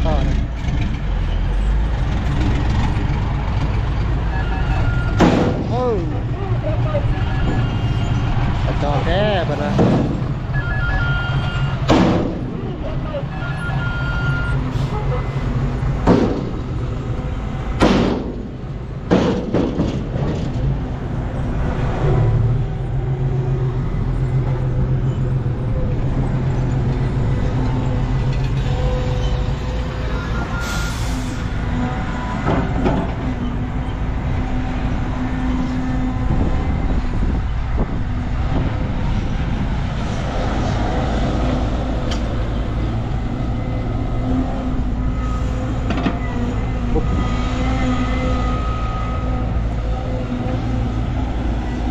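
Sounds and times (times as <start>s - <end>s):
loud bangs: 5.1s - 5.8s, 11.8s - 12.6s, 17.8s - 20.5s.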